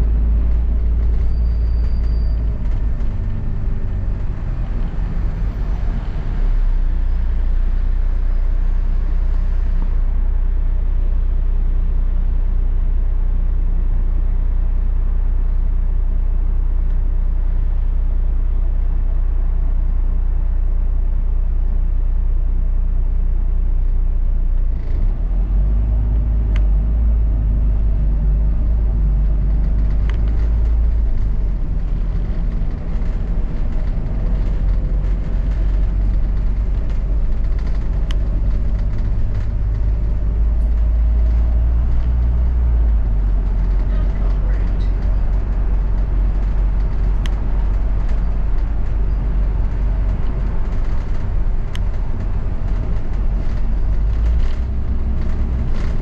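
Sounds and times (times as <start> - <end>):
bus engine and road rumble: 0.0 - 56.0
faint clicks and rattles: 28.9 - 56.0.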